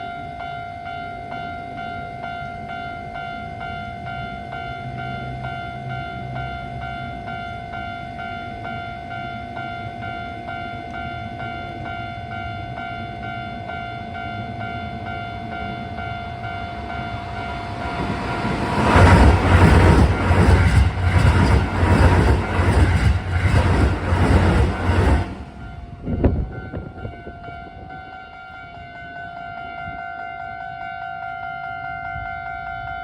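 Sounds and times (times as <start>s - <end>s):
electric train rumbling past: 2.3s - 28.0s.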